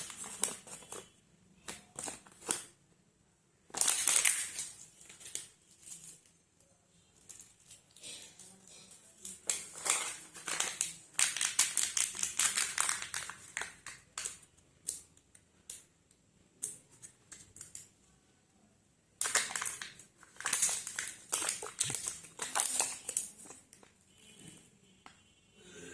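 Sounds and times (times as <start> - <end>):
wrappers crinkling and tearing: 0.0 - 1.2, 3.7 - 6.3, 9.2 - 14.4, 19.2 - 23.9.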